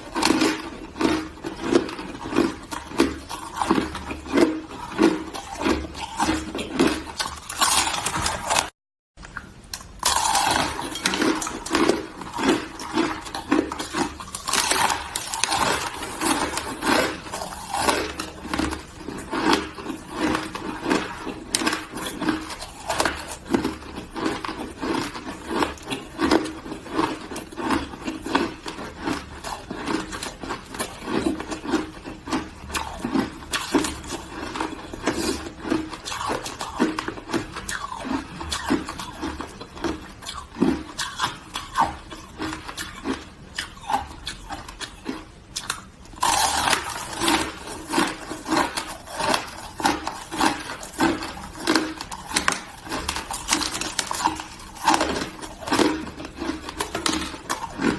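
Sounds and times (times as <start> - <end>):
shaved ice crunching: 46.2 - 57.9.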